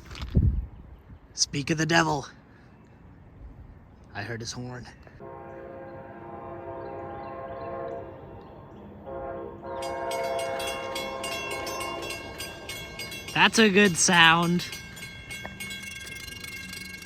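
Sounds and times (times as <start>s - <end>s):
train air horn: 5.2s - 8.4s, 9.0s - 12.3s
bell ringing: 9.8s - 17.0s.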